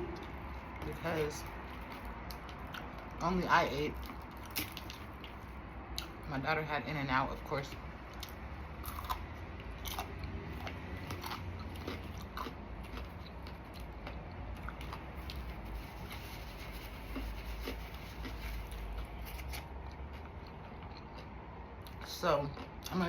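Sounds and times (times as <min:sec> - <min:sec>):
person chewing crispy food: 0:00.2 - 0:03.2, 0:03.9 - 0:06.2, 0:07.6 - 0:23.0.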